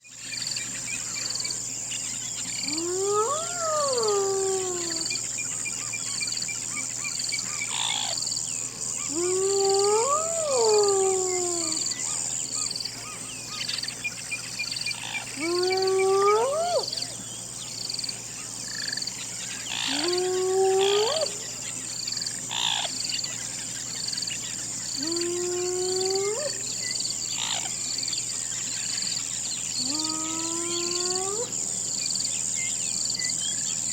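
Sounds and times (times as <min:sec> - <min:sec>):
high pulsing insect drone: 0:00.0 - 0:33.9
hyena hooting calls: 0:02.6 - 0:05.2, 0:19.7 - 0:21.4.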